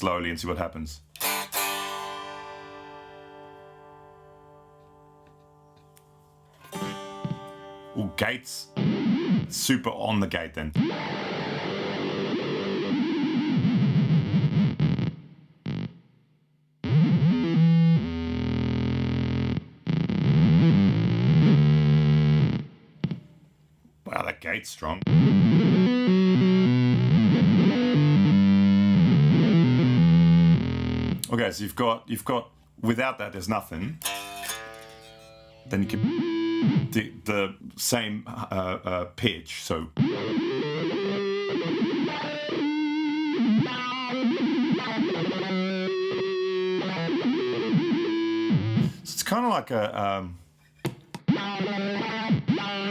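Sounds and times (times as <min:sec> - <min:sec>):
pitch-shifted electric guitar: 0:01.1 - 0:09.7, 0:10.7 - 0:16.1, 0:16.8 - 0:23.4, 0:25.0 - 0:31.3, 0:33.9 - 0:37.4, 0:39.9 - 0:49.0, 0:51.2 - 0:52.9.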